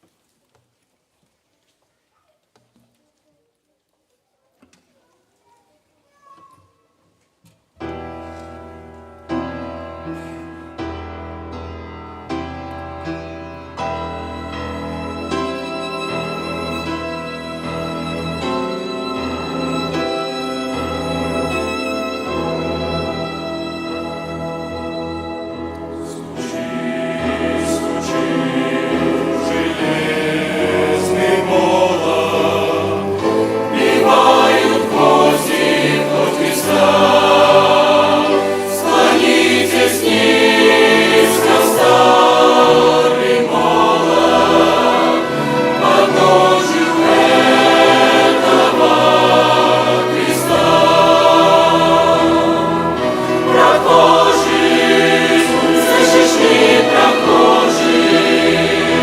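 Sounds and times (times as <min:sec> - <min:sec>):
violin orchestra: 0:13.0 - 0:59.0
choir singing a hymn: 0:13.8 - 0:59.0.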